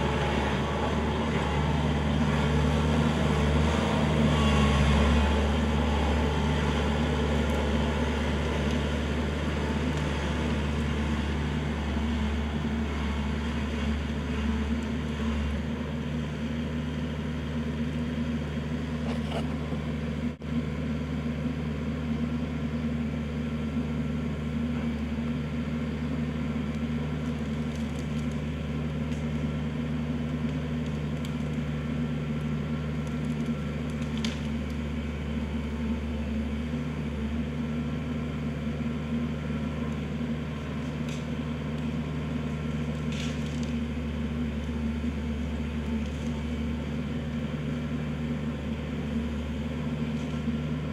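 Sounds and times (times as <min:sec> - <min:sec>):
tractor diesel engine running: 0:00.0 - 0:50.9.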